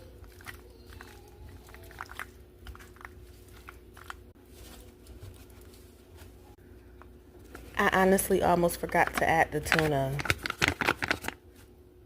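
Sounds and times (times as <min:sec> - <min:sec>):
wet squishing: 0:00.0 - 0:04.4
spoon mixing food in a bowl: 0:00.0 - 0:06.4.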